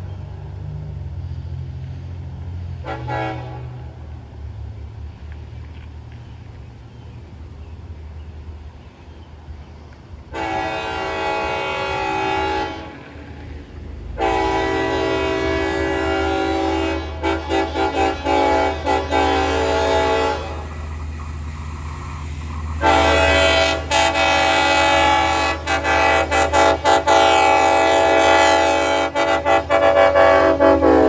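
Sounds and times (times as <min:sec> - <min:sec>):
train rumble: 0:00.0 - 0:31.0
train horn chord blasts: 0:02.8 - 0:04.1, 0:10.3 - 0:20.9, 0:22.8 - 0:31.0.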